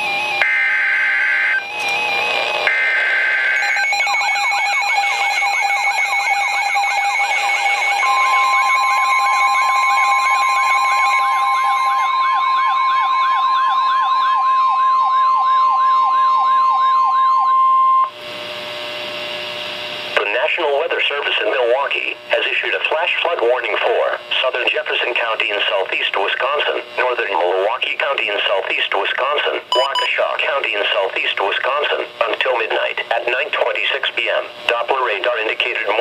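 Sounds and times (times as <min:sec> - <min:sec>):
electronic sirens wailing: 0:00.0 - 0:18.2
steady alarm tone: 0:00.0 - 0:18.2, 0:29.7 - 0:30.2
data bursts: 0:29.7 - 0:30.2.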